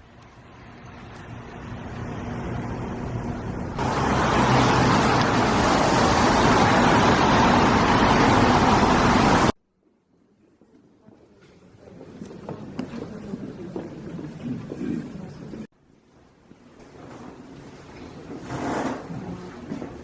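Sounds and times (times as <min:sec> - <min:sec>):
vehicle hum: 0:00.0 - 0:09.6
loud rushing noise: 0:02.6 - 0:09.6.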